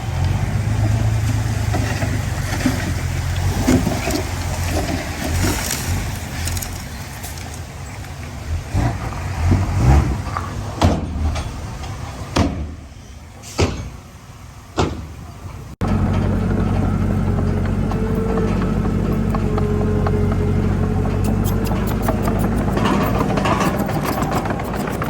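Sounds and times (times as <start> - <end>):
diesel engine of heavy machinery: 0.0 - 25.0
sharp metallic clanks and knocks: 10.8 - 12.8, 13.5 - 14.0, 15.8 - 25.0.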